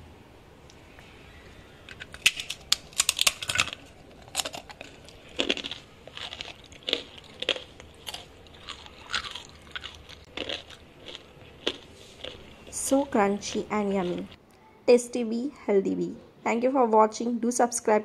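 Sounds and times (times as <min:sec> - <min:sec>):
taco shell cracking: 0:01.9 - 0:12.4
crunchy chewing: 0:01.9 - 0:14.4.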